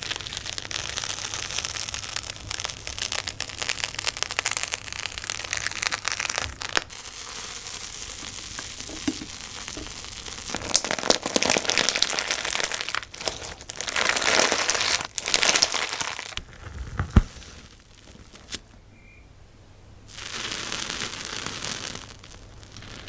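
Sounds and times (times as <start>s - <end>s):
slime squished by hand: 0.0s - 7.0s, 7.9s - 18.6s.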